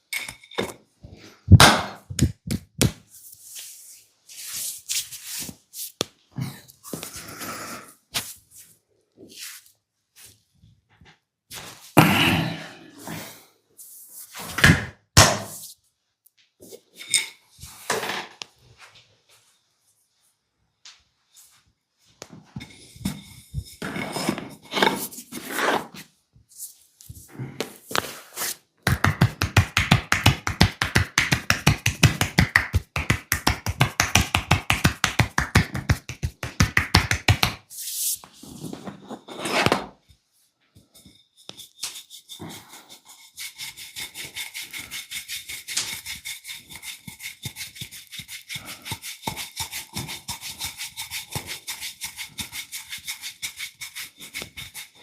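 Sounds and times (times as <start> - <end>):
hands rubbing skin: 2.2 - 6.1, 8.1 - 8.7, 9.3 - 10.4, 26.6 - 38.2
hands slapping body: 28.8 - 37.6.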